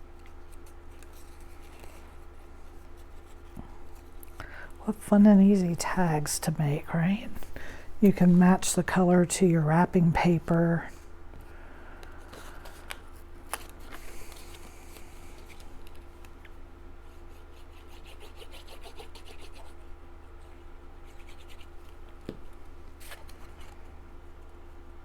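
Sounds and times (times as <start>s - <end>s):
paper scratching and rasping: 0.5s - 4.1s, 17.1s - 19.8s, 21.0s - 22.0s.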